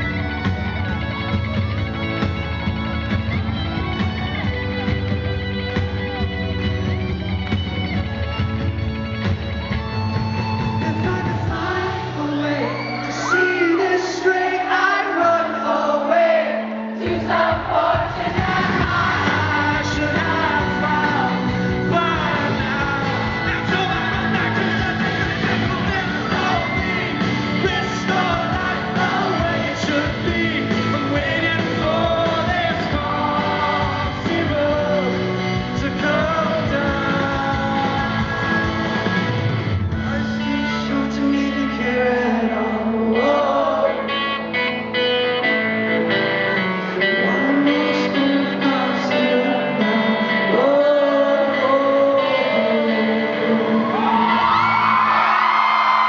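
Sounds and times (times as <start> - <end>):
live rock band: 0.0 - 56.0
man singing: 10.7 - 39.3, 39.9 - 44.5, 46.8 - 54.6.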